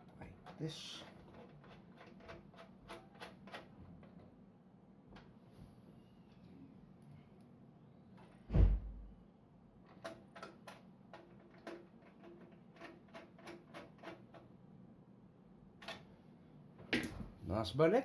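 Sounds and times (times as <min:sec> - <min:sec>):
heavy thump: 0:08.5 - 0:09.1.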